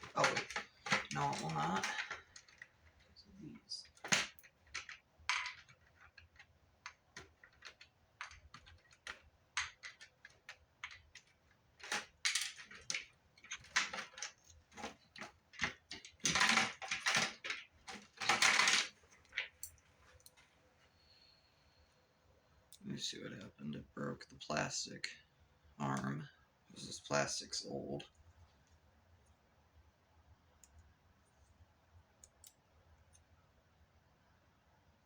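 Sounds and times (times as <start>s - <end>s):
plastic parts clicking: 0.0s - 3.0s, 3.7s - 20.3s.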